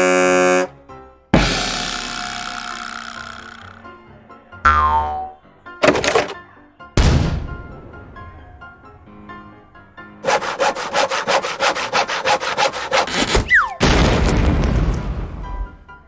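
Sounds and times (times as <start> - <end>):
faint background music: 3.6 - 10.3
fast even scraping: 10.2 - 13.8.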